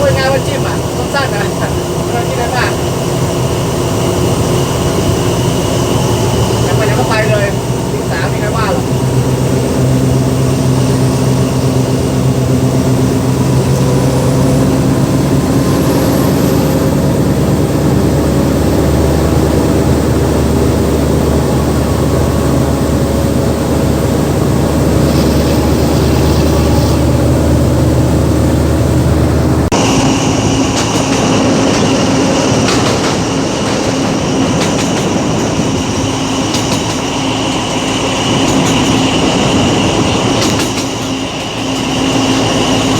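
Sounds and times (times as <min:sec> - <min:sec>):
diesel engine drone: 0:00.0 - 0:42.9
high whine: 0:00.0 - 0:42.9
train wheels on rails: 0:00.0 - 0:42.9
wheels clattering over rail joints: 0:30.4 - 0:42.9.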